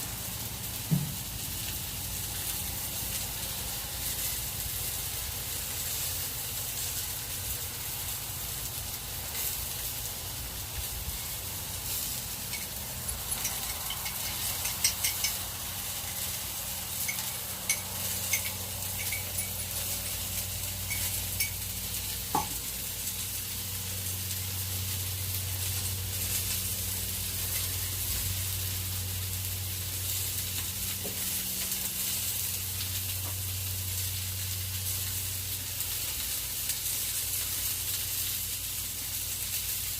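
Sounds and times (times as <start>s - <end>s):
chicken sizzling in oil: 0.0s - 39.9s
utensil clicking against pan: 12.5s - 15.5s, 17.0s - 19.6s.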